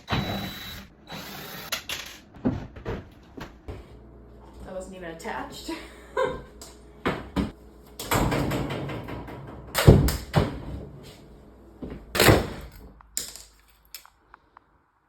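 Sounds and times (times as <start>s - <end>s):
wooden cabinets rattling clatter: 7.1s - 10.9s.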